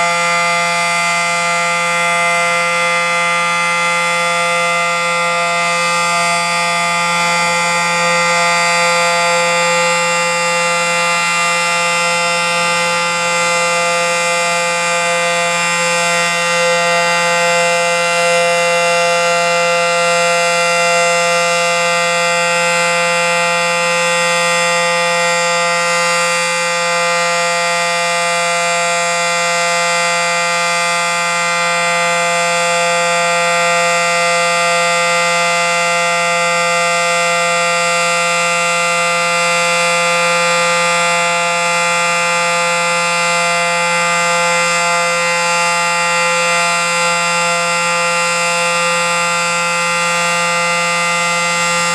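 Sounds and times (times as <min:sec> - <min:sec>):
two-tone siren: 0:00.0 - 0:51.9.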